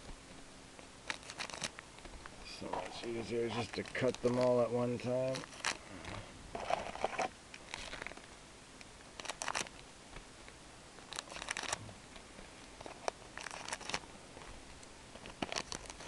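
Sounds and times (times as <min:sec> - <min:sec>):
card wrappers crinkling: 0:01.0 - 0:02.1, 0:02.7 - 0:05.8, 0:06.6 - 0:08.3, 0:09.2 - 0:09.7, 0:11.1 - 0:11.8, 0:12.8 - 0:14.0, 0:15.2 - 0:16.0
cards being pulled out: 0:01.0 - 0:08.3, 0:09.2 - 0:09.8, 0:11.1 - 0:11.8, 0:12.8 - 0:14.0, 0:15.2 - 0:16.0.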